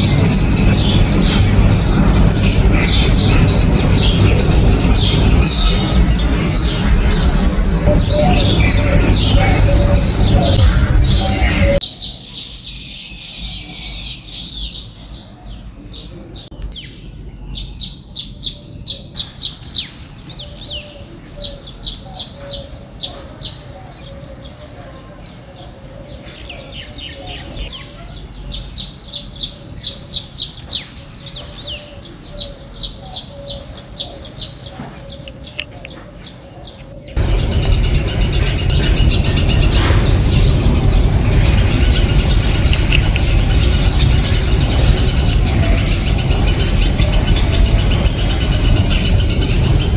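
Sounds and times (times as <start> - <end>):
loud steady noise with high whine: 0.0 - 11.8, 37.2 - 49.9
small birds chirping: 0.0 - 24.3, 25.3 - 49.9.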